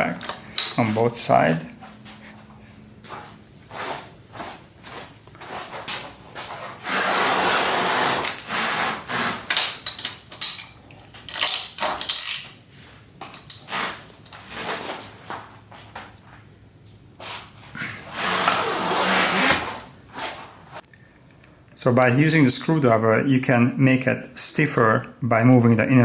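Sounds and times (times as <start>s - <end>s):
metal tools clinking: 0.2s - 0.9s, 9.5s - 12.6s.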